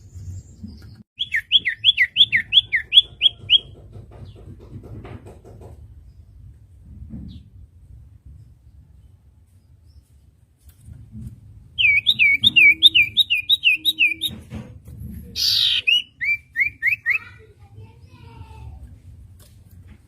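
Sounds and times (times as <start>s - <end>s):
bird whistling song: 1.2s - 3.7s, 11.8s - 14.4s, 15.4s - 17.3s.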